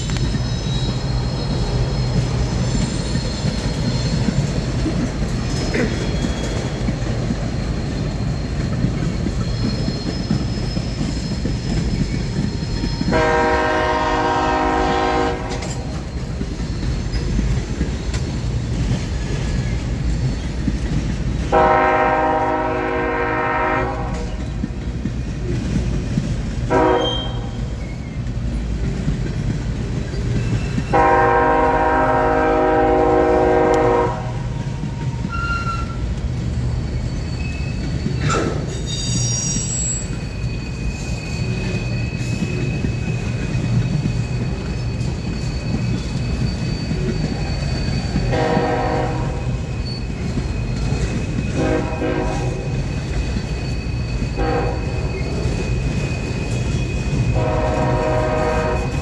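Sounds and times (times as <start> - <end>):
high wheel squeal: 0.0 - 21.6, 24.2 - 59.0
train rumble and wheel clatter: 0.0 - 59.0
train horn blasts: 13.0 - 16.1, 21.4 - 24.4, 26.7 - 27.7, 30.9 - 34.7, 48.2 - 49.8, 51.5 - 52.8, 54.4 - 55.6, 57.1 - 59.0.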